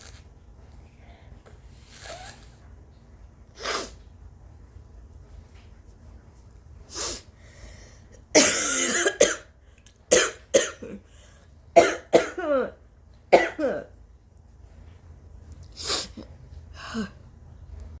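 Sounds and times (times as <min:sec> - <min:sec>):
short breaths: 0:06.9 - 0:08.2
woman coughing: 0:08.3 - 0:09.5, 0:10.1 - 0:11.0, 0:11.8 - 0:13.9.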